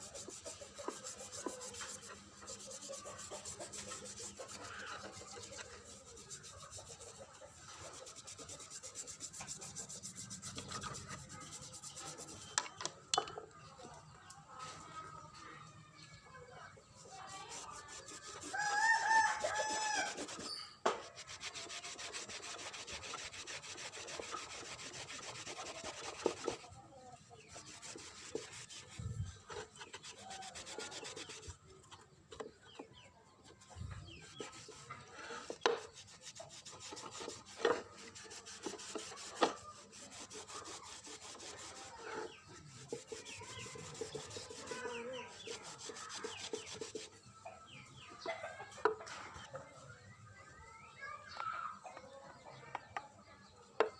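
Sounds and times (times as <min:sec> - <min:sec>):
rasping rub: 0:00.0 - 0:12.6, 0:17.0 - 0:26.7, 0:27.5 - 0:31.6, 0:34.1 - 0:47.2
rooster crowing: 0:18.5 - 0:20.2.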